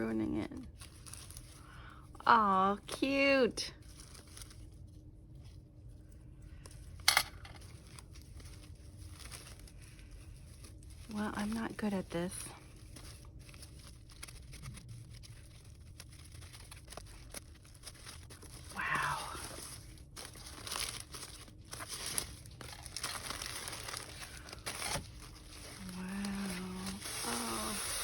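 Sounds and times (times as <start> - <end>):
paper packaging crinkling: 0.2 - 2.1, 3.8 - 28.0
person humming: 25.8 - 28.0.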